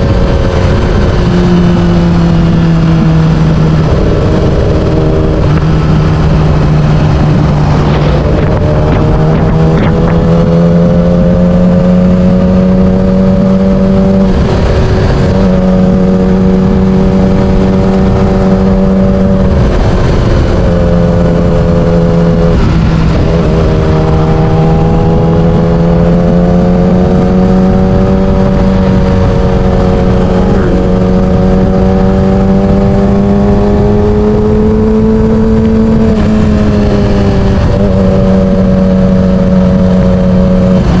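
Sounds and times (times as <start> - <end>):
wind noise on microphone: 0.0 - 41.0.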